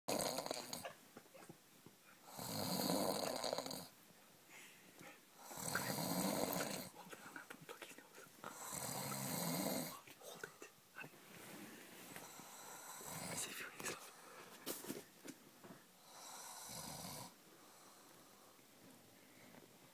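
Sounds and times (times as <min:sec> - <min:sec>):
person snoring: 0:00.1 - 0:00.8, 0:02.3 - 0:03.9, 0:05.4 - 0:07.0, 0:08.5 - 0:10.0, 0:12.2 - 0:13.5, 0:16.0 - 0:18.0
quiet breaths: 0:00.1 - 0:19.9.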